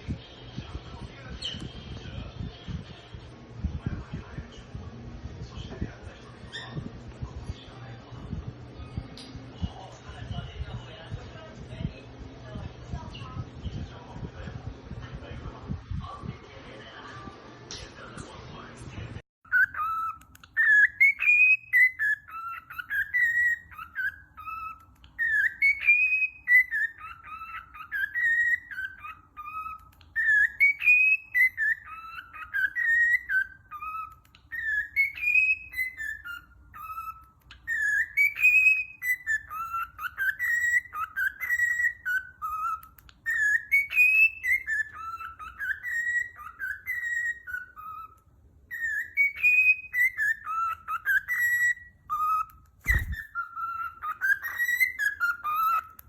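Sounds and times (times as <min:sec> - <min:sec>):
bird whistling a tune: 0:19.5 - 0:56.0.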